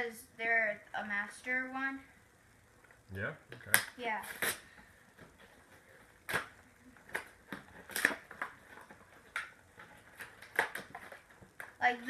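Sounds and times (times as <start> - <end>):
plastic toy packaging clicks: 6.3 - 11.8.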